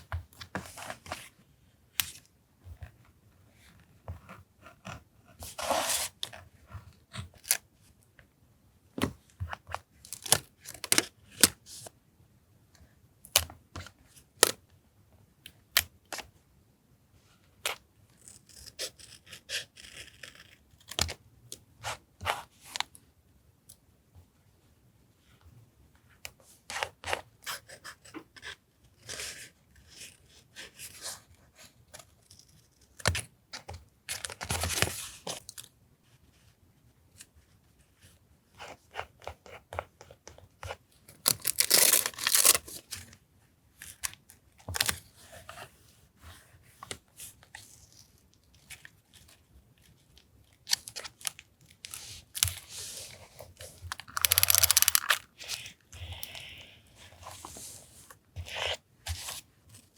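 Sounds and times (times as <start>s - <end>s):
paper rustling and tapping: 54.0s - 55.2s
paper tearing or peeling: 54.1s - 55.2s.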